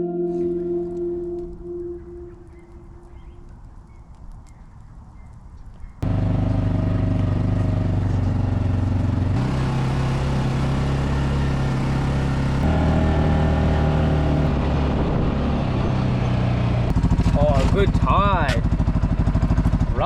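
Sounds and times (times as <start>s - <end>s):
motor engine running under load: 6.0s - 20.0s.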